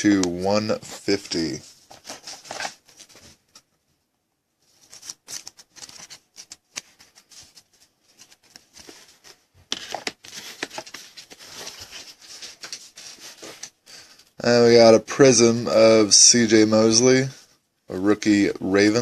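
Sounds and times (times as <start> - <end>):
card sleeves rustling: 0.1 - 3.7, 4.6 - 13.9.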